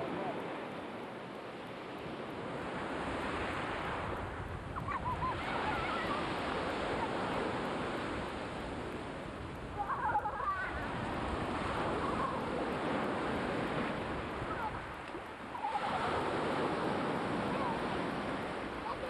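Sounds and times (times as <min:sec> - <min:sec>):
waves washing onto shore: 0:00.0 - 0:19.0
wavering high calls: 0:04.8 - 0:06.3, 0:15.5 - 0:16.2.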